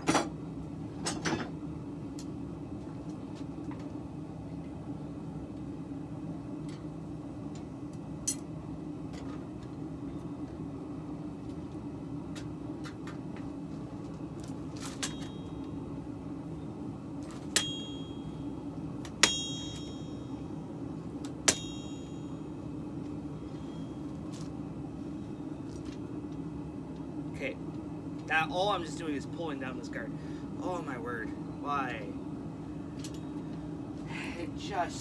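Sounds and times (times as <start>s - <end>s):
steady low hum: 0.0s - 35.0s
hammer striking metal anvil: 17.6s - 18.4s, 19.2s - 20.3s, 21.5s - 22.4s.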